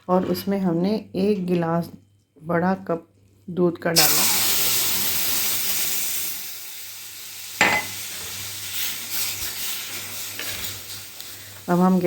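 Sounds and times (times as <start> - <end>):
milk hissing in hot pan: 4.0 - 11.8
stirring scrapes in pan: 8.1 - 11.2.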